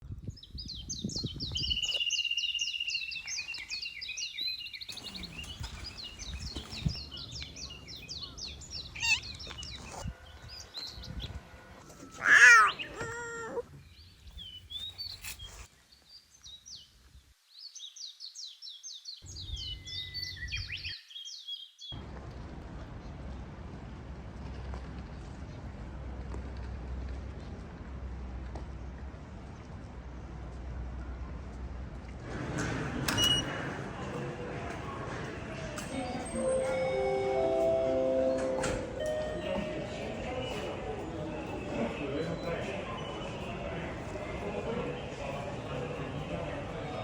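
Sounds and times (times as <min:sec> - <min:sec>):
small birds chirping: 0:00.3 - 0:10.0
cat meowing: 0:09.0 - 0:09.4, 0:12.1 - 0:13.6.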